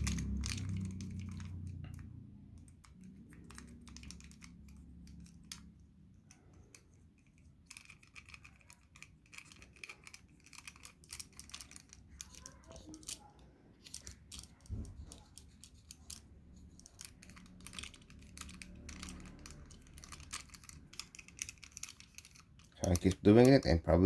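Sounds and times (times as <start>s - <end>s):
low hum: 0.0s - 5.8s.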